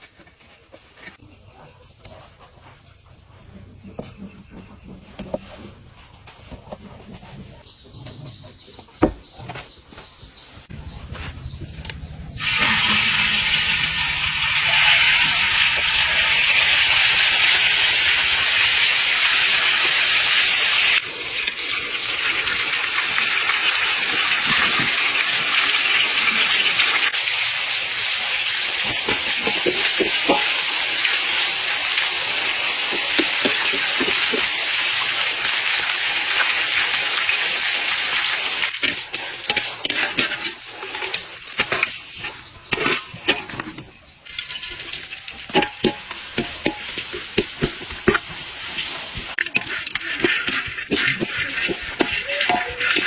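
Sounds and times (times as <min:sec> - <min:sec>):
food sizzling in hot oil: 0:12.4 - 0:43.5, 0:44.2 - 0:53.0
oil pops and crackles: 0:28.4 - 0:53.0.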